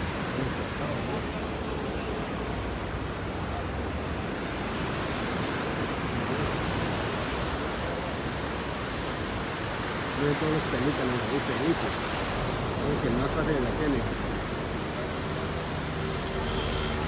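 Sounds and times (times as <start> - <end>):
sea surf: 0.0 - 17.0
wind: 0.0 - 17.0.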